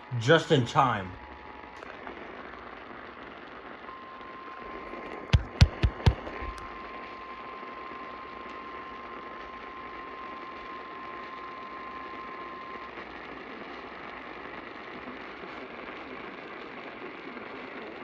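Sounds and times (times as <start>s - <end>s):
radio static hiss: 0.0s - 6.8s.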